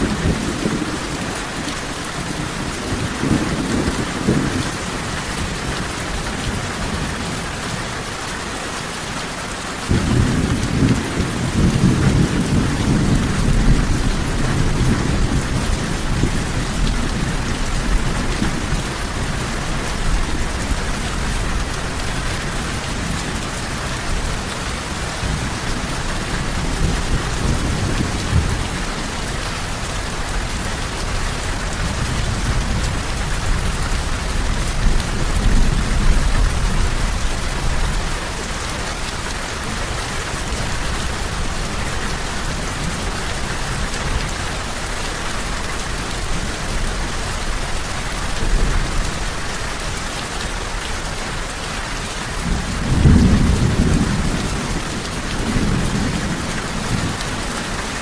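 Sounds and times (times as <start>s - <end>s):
low rolling thunder: 0.0s - 6.1s, 9.9s - 38.1s, 52.4s - 58.0s
rain hissing on a surface: 0.0s - 58.0s.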